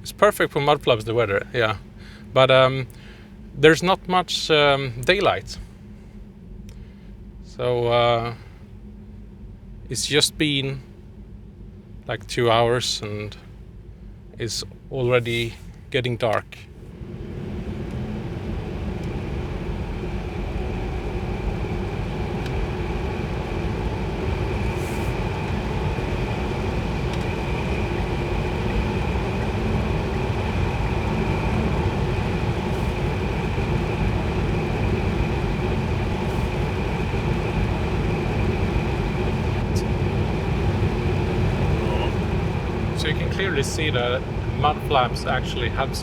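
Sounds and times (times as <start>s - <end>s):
steady held tones: 17.9s - 46.0s.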